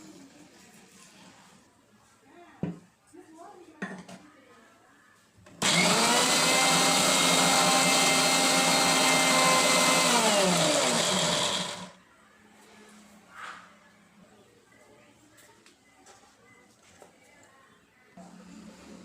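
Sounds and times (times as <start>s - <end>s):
mixer grinder motor running: 5.6s - 12.0s.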